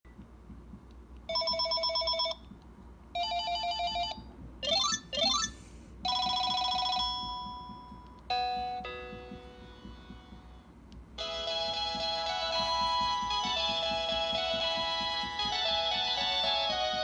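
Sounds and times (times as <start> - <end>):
cordless phone ringtones: 1.3 - 2.4, 3.2 - 10.3.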